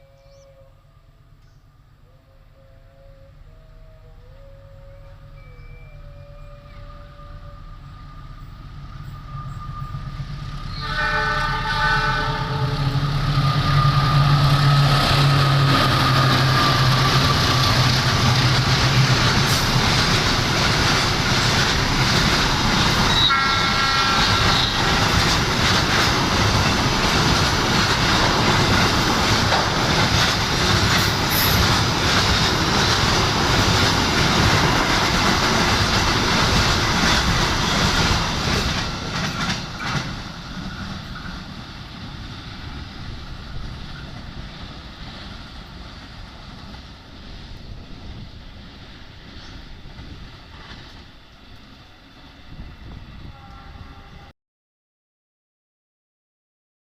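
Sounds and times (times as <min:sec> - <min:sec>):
train horn: 0:00.0 - 0:19.8, 0:22.9 - 0:25.4, 0:53.2 - 0:54.3
train wheels clattering on rails: 0:09.0 - 0:48.2.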